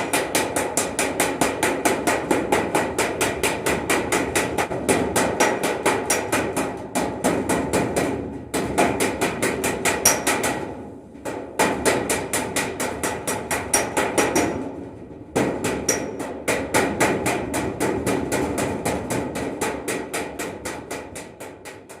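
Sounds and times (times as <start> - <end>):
hammer striking metal pot: 0.0 - 10.6, 15.4 - 17.9.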